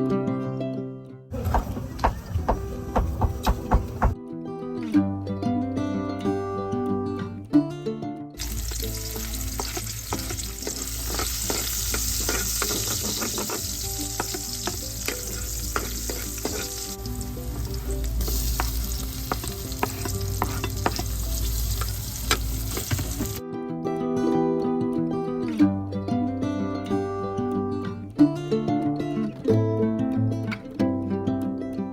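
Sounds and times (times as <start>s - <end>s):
food sizzling in hot oil: 8.4s - 23.4s
utensil scraping a pan: 8.7s - 17.0s, 18.2s - 23.4s.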